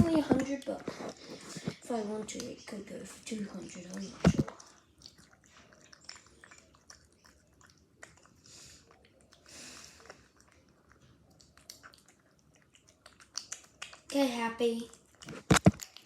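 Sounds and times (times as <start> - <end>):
cat chewing: 0.0 - 16.0.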